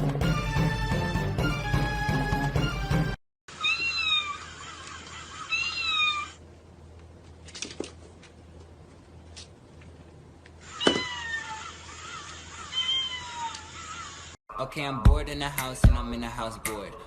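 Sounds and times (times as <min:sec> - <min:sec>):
music: 0:00.0 - 0:03.2, 0:14.5 - 0:17.0
cat meowing: 0:03.5 - 0:06.4, 0:10.7 - 0:11.8, 0:12.6 - 0:14.0.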